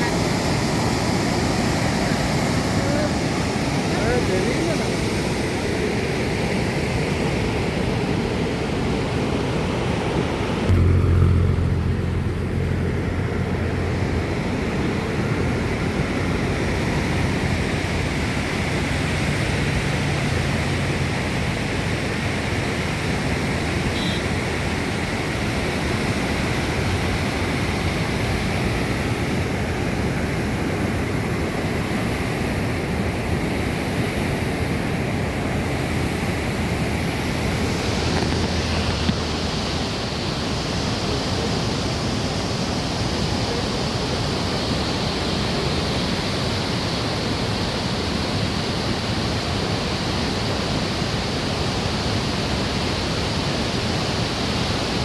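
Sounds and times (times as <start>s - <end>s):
water rushing through dam gates: 0.0s - 10.3s, 14.1s - 55.0s
low rumble: 10.7s - 21.5s.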